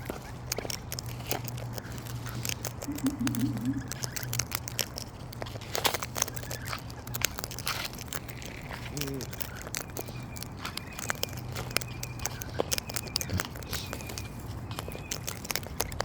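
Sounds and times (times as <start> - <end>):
steady low hum: 0.0 - 5.3
cockatoos cracking seed: 0.0 - 16.0.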